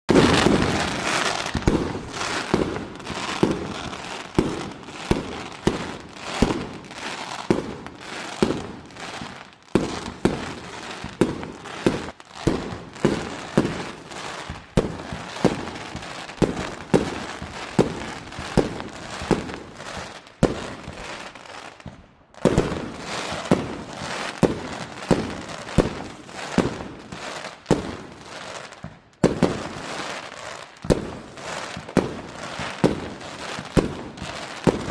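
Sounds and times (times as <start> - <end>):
fireworks bangs: 0.1 - 34.9
fireworks crackling: 0.1 - 34.9.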